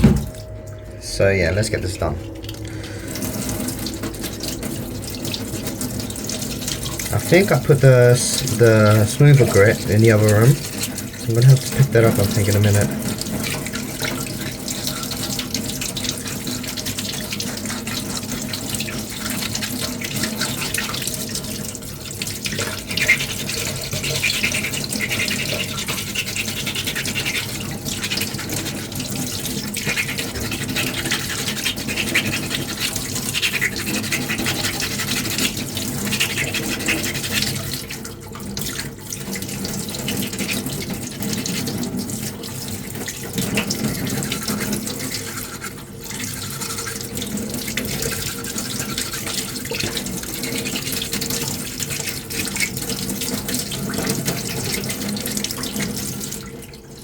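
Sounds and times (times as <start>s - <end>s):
sandpaper scrubbing: 23.0s - 28.9s, 29.7s - 37.7s.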